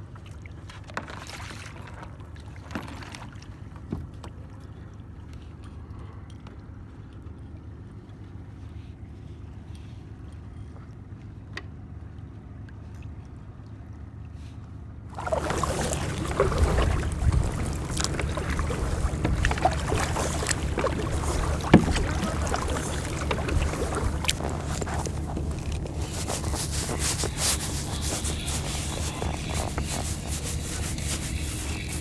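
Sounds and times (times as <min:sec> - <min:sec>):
water splashing against hull: 0:15.1 - 0:32.0
faint low hum: 0:15.2 - 0:32.0
wind on microphone: 0:15.2 - 0:32.0.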